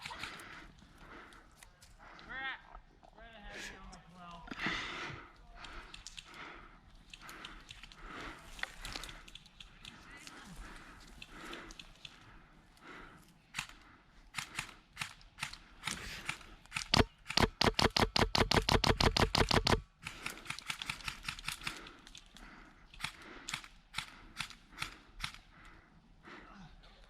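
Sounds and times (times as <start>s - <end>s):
airsoft gun full-auto burst: 15.9s - 21.7s.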